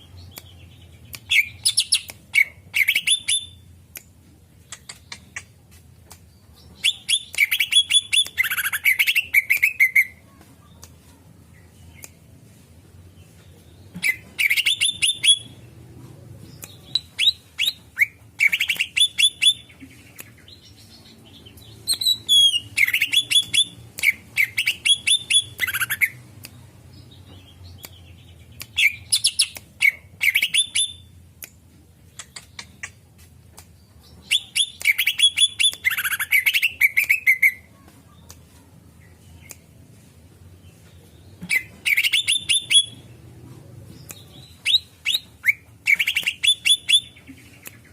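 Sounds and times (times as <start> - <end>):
bird chirping rapidly: 0.0 - 3.7, 14.0 - 15.6, 20.4 - 26.2, 26.9 - 31.1, 34.1 - 37.6, 41.5 - 43.2, 44.2 - 47.2.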